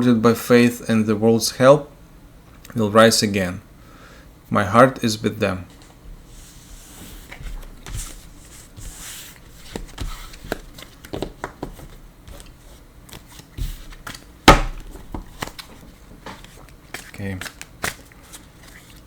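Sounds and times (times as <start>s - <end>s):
cards tapping and clicking: 9.4s - 19.0s.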